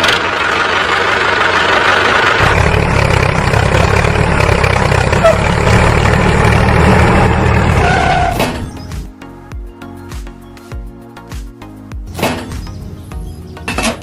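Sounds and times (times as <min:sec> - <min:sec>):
engine idling: 0:00.0 - 0:09.0.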